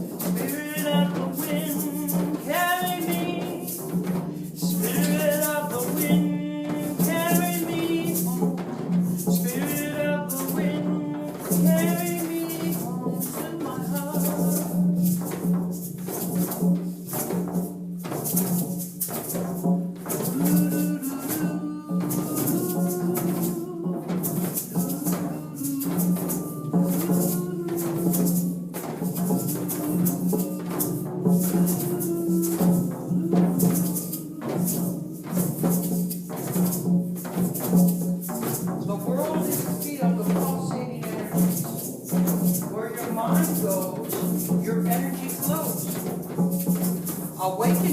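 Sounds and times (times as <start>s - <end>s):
wavering melody: 0.0s - 15.4s, 20.0s - 36.9s
hand percussion rhythm: 0.0s - 47.9s.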